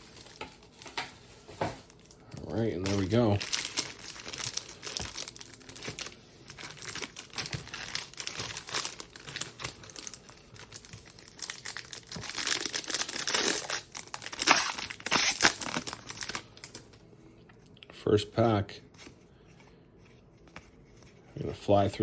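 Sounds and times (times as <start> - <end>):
plastic packaging crinkling and tearing: 0.0 - 17.1.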